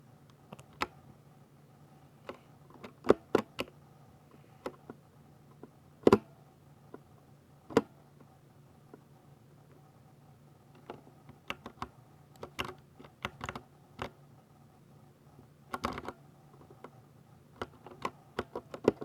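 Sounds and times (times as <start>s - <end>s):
mechanical keyboard keystrokes: 10.8s - 14.2s, 15.7s - 16.2s.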